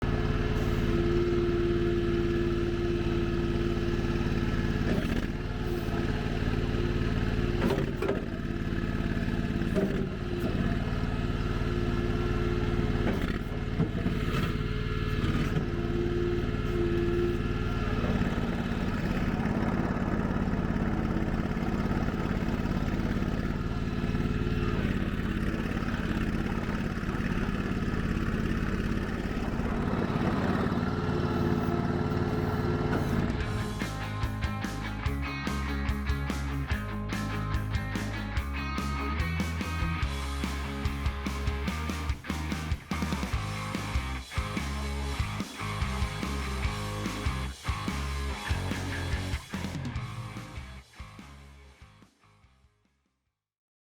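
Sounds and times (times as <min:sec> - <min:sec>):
gas engine running: 0:00.0 - 0:51.6
high whine: 0:15.9 - 0:38.2.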